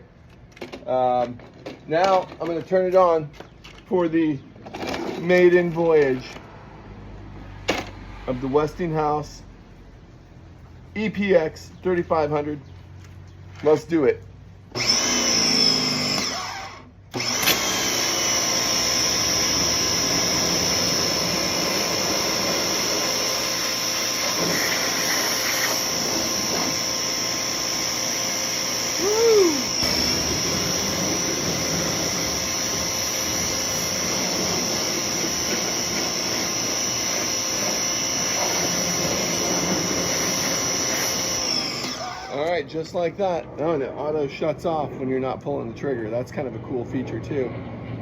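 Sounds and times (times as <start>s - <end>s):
pressure washer whining: 14.6s - 43.2s.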